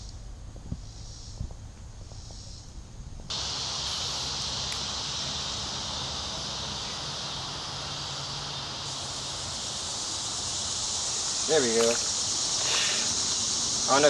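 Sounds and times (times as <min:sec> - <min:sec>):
insect chorus: 0:00.0 - 0:14.0
creek running water: 0:03.3 - 0:14.0.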